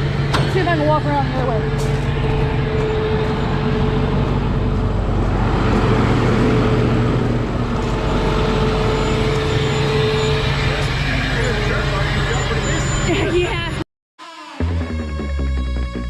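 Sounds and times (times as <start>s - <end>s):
tow truck engine idling: 0.0s - 5.2s
constant whine: 0.0s - 13.8s.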